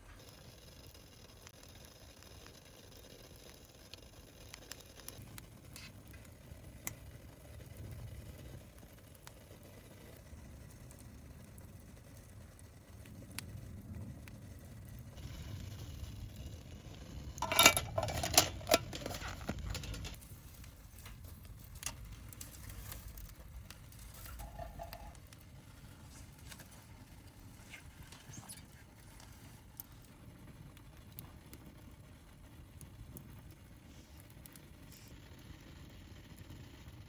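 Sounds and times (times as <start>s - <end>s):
metal cookware clattering: 17.4s - 20.2s, 24.2s - 25.2s.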